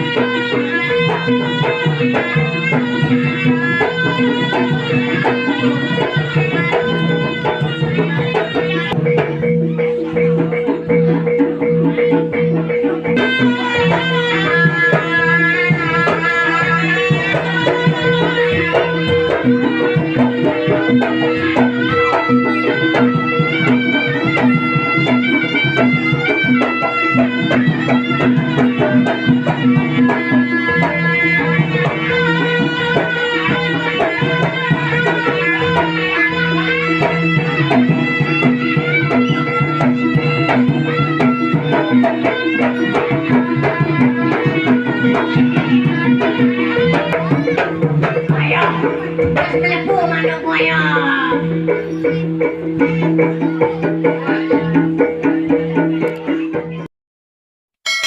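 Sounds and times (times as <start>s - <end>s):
reedy wind instrument melody: 0.0s - 10.2s, 12.4s - 48.2s
hand drum strokes: 0.0s - 56.8s.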